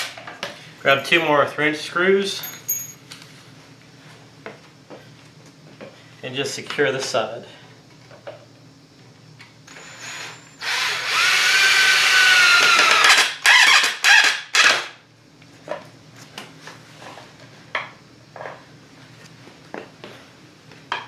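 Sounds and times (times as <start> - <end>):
cordless drill whining: 9.7 - 14.8.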